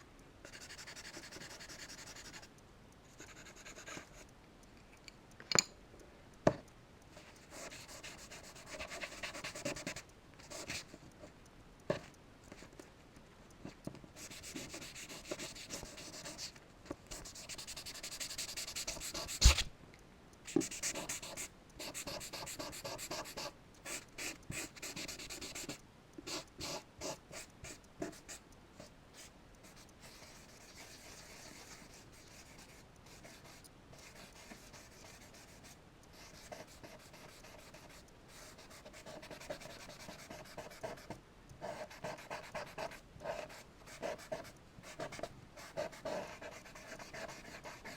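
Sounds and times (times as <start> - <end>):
charcoal scratching on paper: 0.5 - 2.4, 14.2 - 16.5, 17.2 - 19.7, 20.6 - 27.5, 29.7 - 35.6, 36.2 - 47.9.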